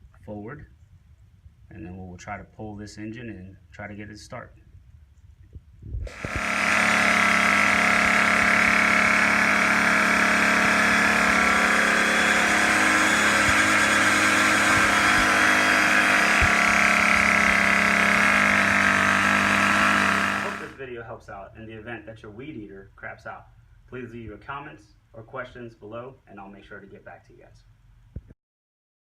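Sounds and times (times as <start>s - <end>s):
string trimmer engine running: 6.0s - 20.8s.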